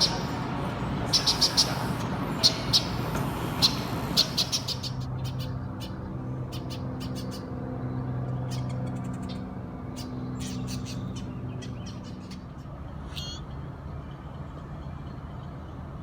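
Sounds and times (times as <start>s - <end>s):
blackbirds short sharp calls: 0.0s - 5.9s
steady low hum: 0.0s - 11.7s.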